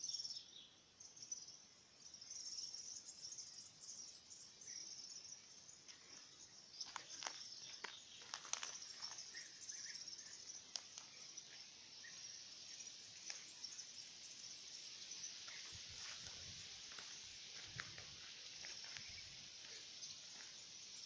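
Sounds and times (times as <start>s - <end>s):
insects chirring: 0.0s - 21.0s.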